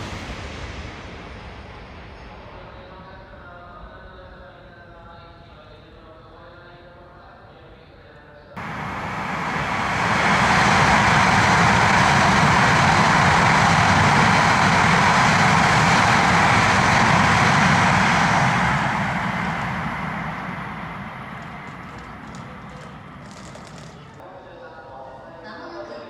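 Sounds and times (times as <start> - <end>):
train passing with rushing noise: 0.0 - 4.9, 8.6 - 24.4.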